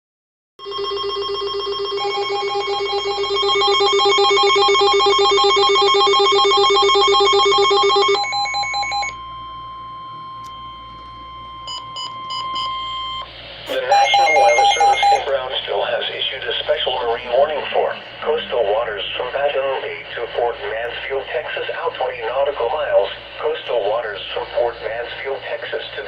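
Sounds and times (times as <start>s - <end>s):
warbling electronic alert tones: 0.7s - 9.2s, 11.7s - 15.3s
steady alert tone: 13.7s - 15.4s.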